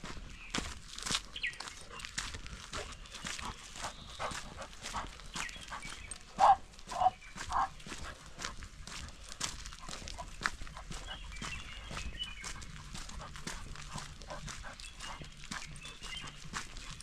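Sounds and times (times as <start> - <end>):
dog barking: 6.4 - 7.8.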